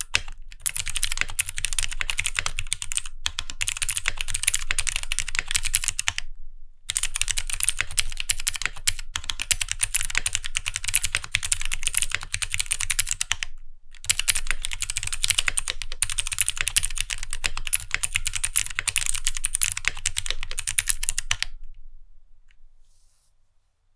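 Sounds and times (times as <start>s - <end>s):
mechanical keyboard typing: 0.0s - 6.2s, 6.9s - 21.6s.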